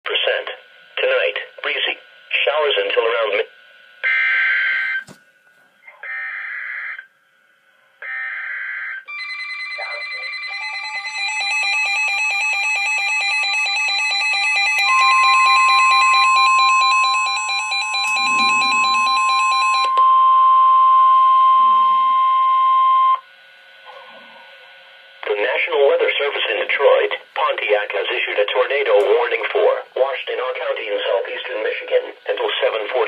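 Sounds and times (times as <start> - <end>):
steady warning alarm tone: 5.9 - 7.1, 8.0 - 23.5
pulsing electronic alarm: 6.0 - 7.1, 8.0 - 23.2
digital header tone bursts: 18.0 - 19.9.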